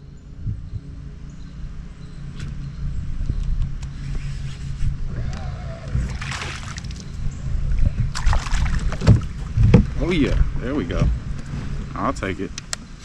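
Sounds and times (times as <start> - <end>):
low rumble on microphone: 0.0 - 13.0
water splashing and sloshing: 5.4 - 11.8.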